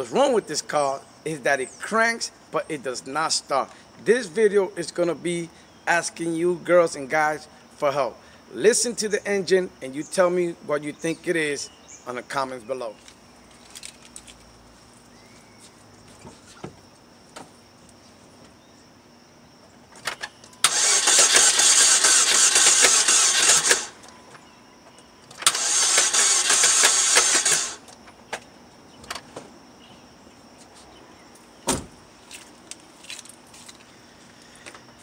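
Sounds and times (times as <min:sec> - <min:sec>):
car engine cranking: 0:20.6 - 0:24.0, 0:25.3 - 0:27.9.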